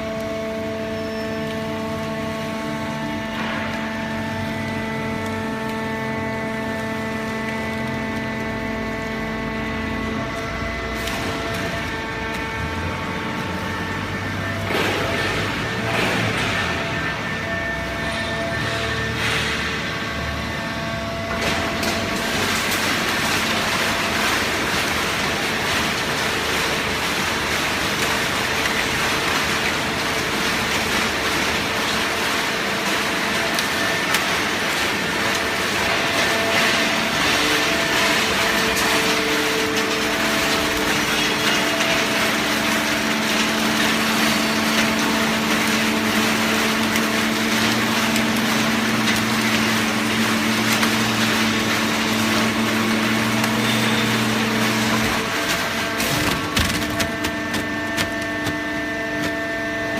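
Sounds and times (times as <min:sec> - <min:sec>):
hydraulic pump and motor hum: 0:00.0 - 0:59.9
baler ram compressing cardboard: 0:35.8 - 0:59.9.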